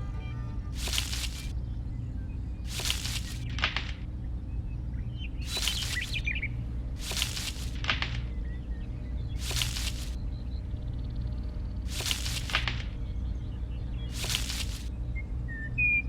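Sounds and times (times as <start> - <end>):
steady low hum: 0.0 - 16.0
birds chirping: 0.8 - 15.5
short sharp hissing bursts: 2.7 - 3.5, 5.5 - 6.2, 11.9 - 12.8.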